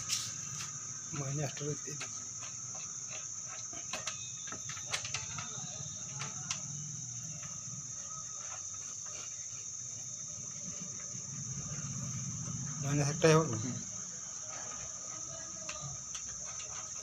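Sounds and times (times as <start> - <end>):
high-pitched whine: 10.4 - 16.1.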